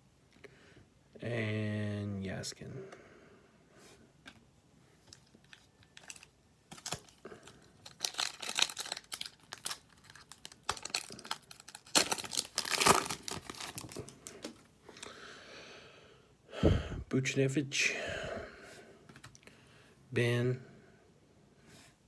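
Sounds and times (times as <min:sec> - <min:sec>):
cards being handled: 0:05.1 - 0:14.6
wrapper crinkling and tearing: 0:05.1 - 0:14.6.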